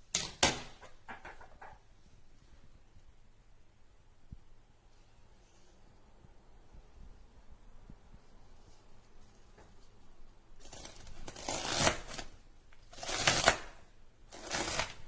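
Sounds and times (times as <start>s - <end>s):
rustling handling noise: 6.8s - 12.9s.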